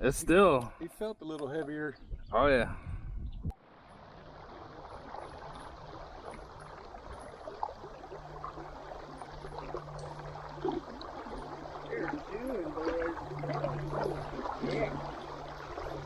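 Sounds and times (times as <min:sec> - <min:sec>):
river water trickling and lapping: 0:03.5 - 0:16.0
small splashes: 0:03.9 - 0:16.0.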